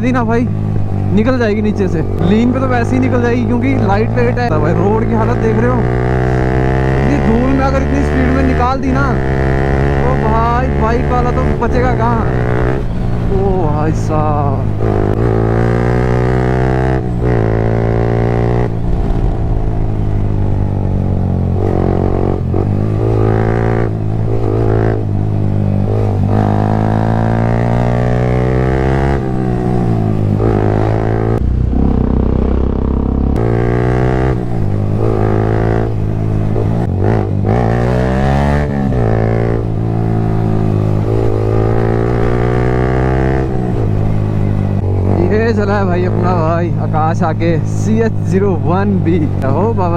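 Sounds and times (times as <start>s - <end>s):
motorcycle engine accelerating: 0.0s - 49.9s.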